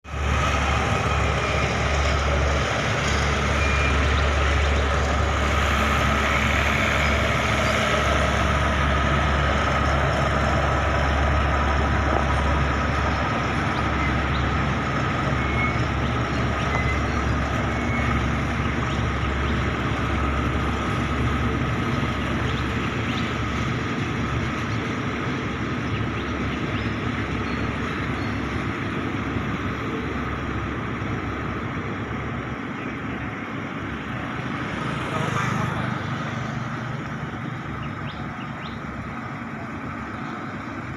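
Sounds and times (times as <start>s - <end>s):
diesel locomotive running: 0.0s - 40.9s.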